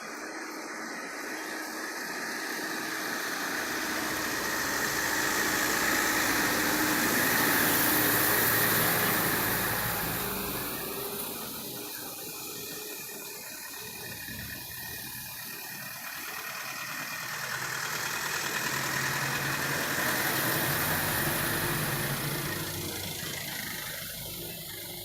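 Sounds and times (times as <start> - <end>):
steady rushing noise: 0.0 - 16.0
vehicle engine running: 0.0 - 25.0.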